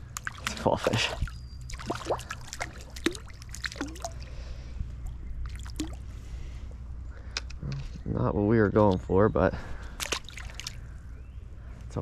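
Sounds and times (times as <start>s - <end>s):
water splashing and dripping: 0.0s - 4.3s, 5.0s - 6.0s, 10.0s - 10.8s
steady low hum: 0.0s - 12.0s.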